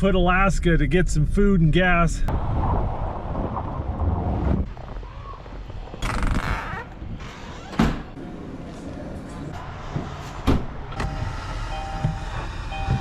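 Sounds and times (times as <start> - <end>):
car engine rumbling: 8.0 - 13.0.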